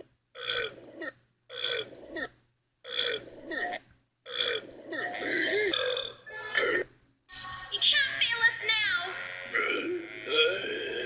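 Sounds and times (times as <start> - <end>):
person burping: 4.4 - 6.9, 9.5 - 11.0.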